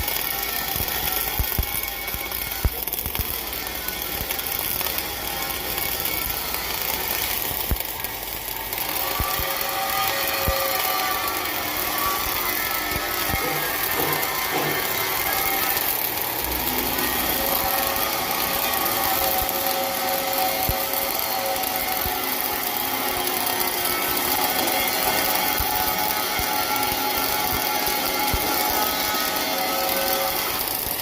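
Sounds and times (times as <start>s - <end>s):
sharp clicks: 0.0s - 10.8s
welding arc hissing: 0.0s - 31.0s.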